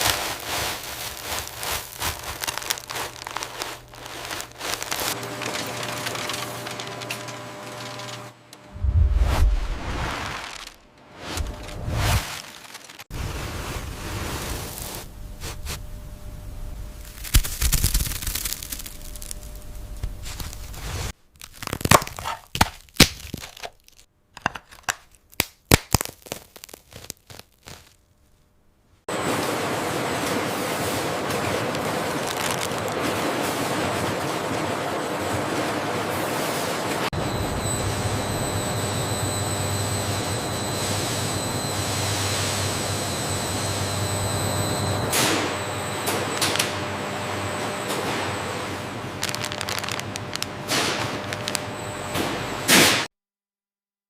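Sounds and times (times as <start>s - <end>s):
fish crackers crunching: 0.0s - 8.2s, 10.2s - 10.8s, 12.2s - 13.1s, 17.0s - 19.5s, 20.3s - 28.0s, 31.7s - 33.3s, 49.2s - 50.6s, 51.2s - 51.6s
factory machinery hum: 0.0s - 8.8s, 13.2s - 17.4s, 18.4s - 21.0s, 29.1s - 53.0s
rush of air: 8.7s - 10.5s
high machine whine: 29.1s - 52.7s.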